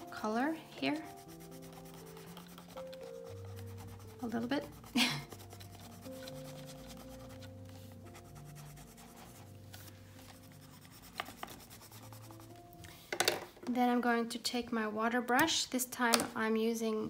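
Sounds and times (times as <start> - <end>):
coloured pencil scratching on paper: 0.0 - 12.6.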